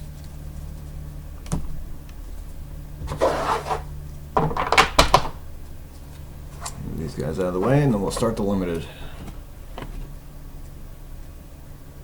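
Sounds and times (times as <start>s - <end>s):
rustling slide of card packs: 3.0s - 4.0s.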